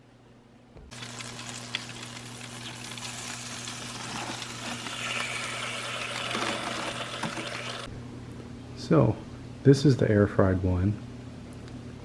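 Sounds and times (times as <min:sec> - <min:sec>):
air fryer oven humming: 0:00.8 - 0:12.0
chicken skin sizzling and crackling: 0:00.9 - 0:07.9.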